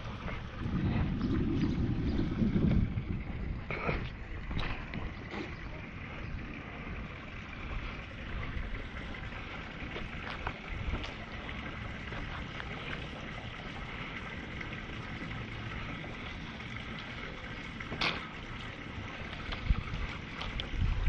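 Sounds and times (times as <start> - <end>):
wind on microphone: 0.0 - 11.4, 19.0 - 21.0.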